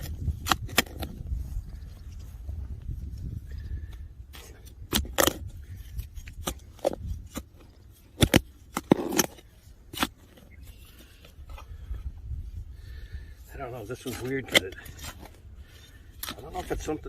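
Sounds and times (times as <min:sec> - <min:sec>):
digging tool scraping soil: 0:00.0 - 0:01.4, 0:04.2 - 0:12.1, 0:13.4 - 0:17.0.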